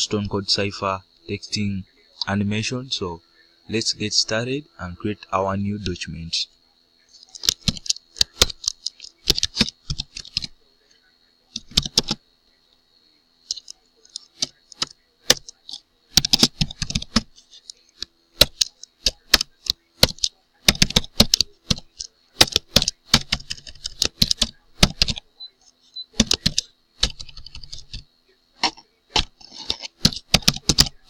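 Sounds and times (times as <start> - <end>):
faint high whine: 0.0 - 31.0
keyboard key clicks: 18.4 - 25.2, 26.2 - 28.0, 28.7 - 30.9.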